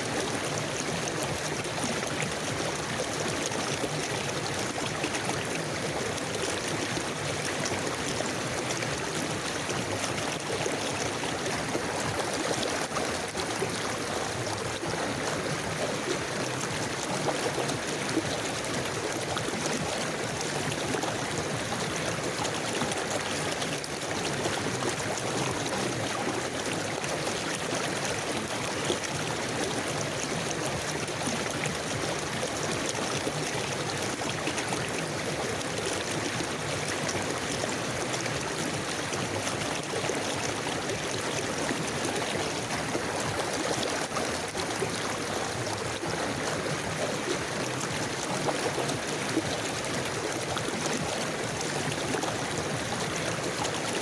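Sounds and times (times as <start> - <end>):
stream rushing over stones: 0.0 - 54.0.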